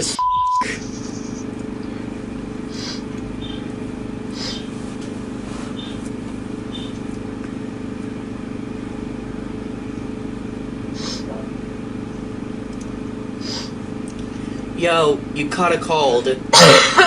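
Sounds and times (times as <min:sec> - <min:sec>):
low mechanical drone: 0:00.0 - 0:17.0
censor bleep: 0:00.2 - 0:01.4.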